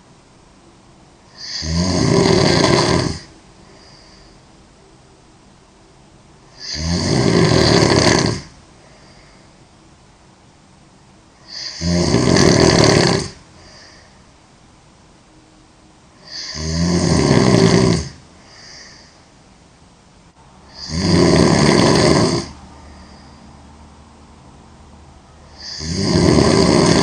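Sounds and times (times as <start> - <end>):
girl snoring loudly: 1.3 - 4.2, 6.5 - 9.0, 11.4 - 14.0, 16.2 - 19.1, 20.7 - 23.2, 25.5 - 27.0
faint breath: 3.2 - 4.7, 8.7 - 10.1, 13.4 - 14.5, 18.3 - 19.5, 22.5 - 24.2.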